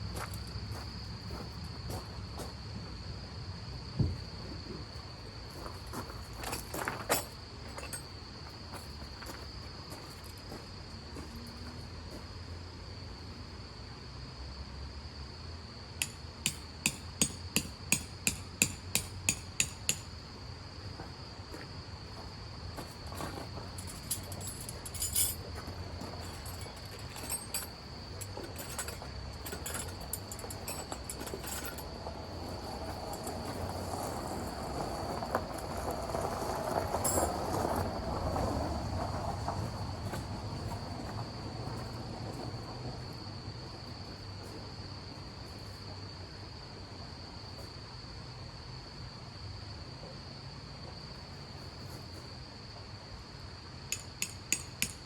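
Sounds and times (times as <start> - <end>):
high insect trill: 0.0 - 55.0
knocks and rustles: 22.8 - 34.2.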